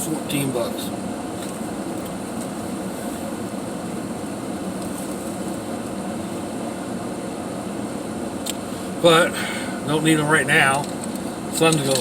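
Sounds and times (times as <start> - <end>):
air-conditioning fan: 0.0 - 12.0
vehicle engine idling: 0.0 - 12.0.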